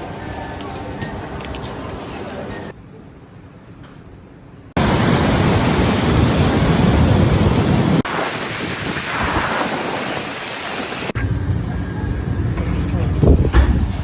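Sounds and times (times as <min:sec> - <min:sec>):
heavy rain: 0:04.8 - 0:11.2
storm wind: 0:04.8 - 0:14.0.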